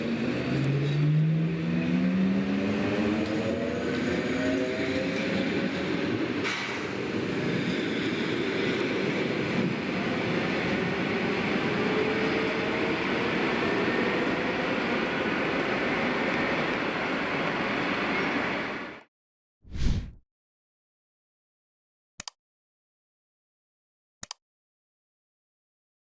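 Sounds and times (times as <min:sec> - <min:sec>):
train wheels rumbling on rails: 0:03.1 - 0:18.8.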